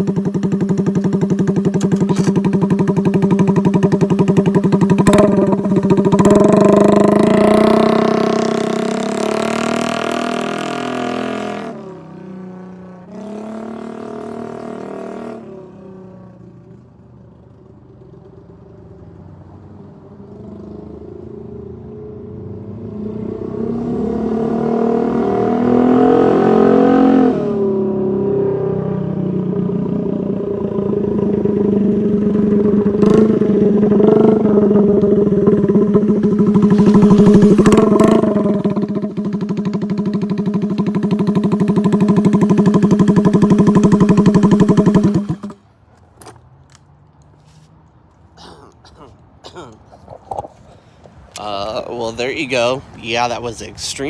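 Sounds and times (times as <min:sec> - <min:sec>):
loud motorcycle engine revving: 0:00.0 - 0:15.8, 0:22.9 - 0:45.6.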